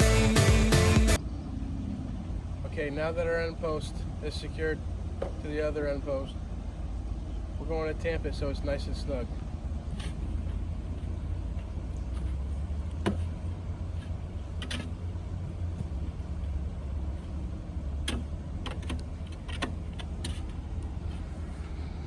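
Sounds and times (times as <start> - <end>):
steady low rumble: 0.0 - 22.0
tamping bar knocking soil: 9.8 - 15.1, 15.8 - 21.4.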